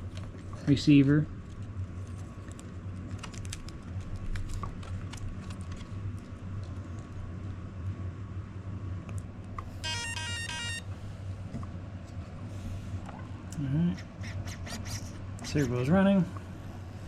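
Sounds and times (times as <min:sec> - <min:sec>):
steady low hum: 0:00.0 - 0:17.0
electronic startup beeps: 0:09.8 - 0:10.9.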